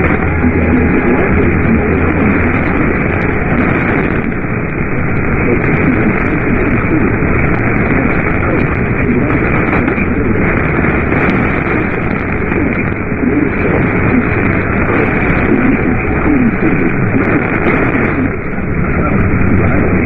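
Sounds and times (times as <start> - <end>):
faint garbled sound: 0.0 - 20.0
radio static hiss: 0.0 - 20.0.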